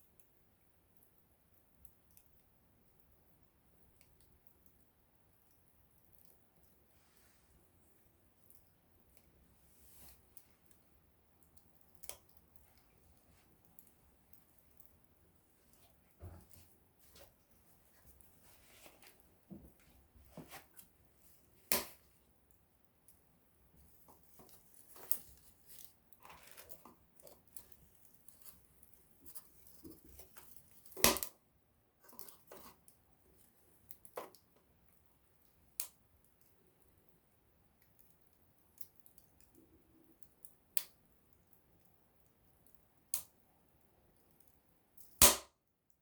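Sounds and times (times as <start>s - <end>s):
campfire crackling: 8.3s - 20.1s
sharp pops from burning wood: 11.5s - 12.9s, 21.6s - 22.1s, 30.0s - 31.4s, 45.0s - 45.5s.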